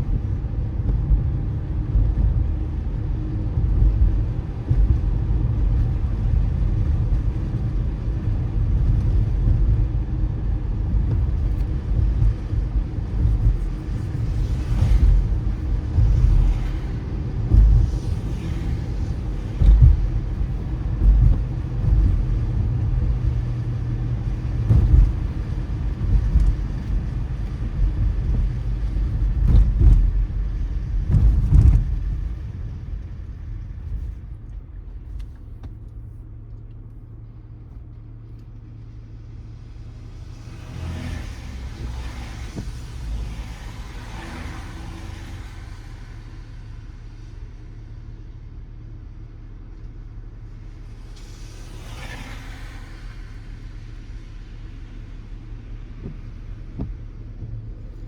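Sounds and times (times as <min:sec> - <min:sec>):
car road rumble: 0:00.0 - 0:58.0
low engine hum: 0:00.0 - 0:58.0
thumps over bumps: 0:10.8 - 0:18.4, 0:19.1 - 0:33.2, 0:55.9 - 0:58.0
wet tyre hiss: 0:39.9 - 0:47.2, 0:50.5 - 0:58.0.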